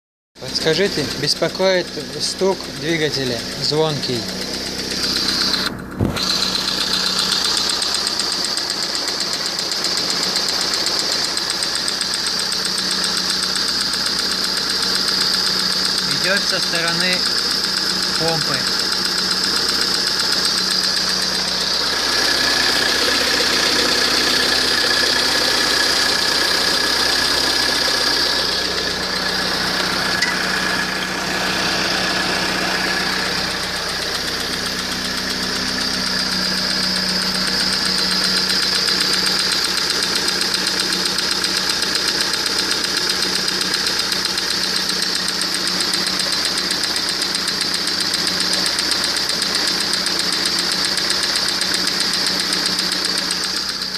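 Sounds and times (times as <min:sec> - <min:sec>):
car engine running: 0:00.4 - 0:53.9
ringing engine knock: 0:32.6 - 0:53.9.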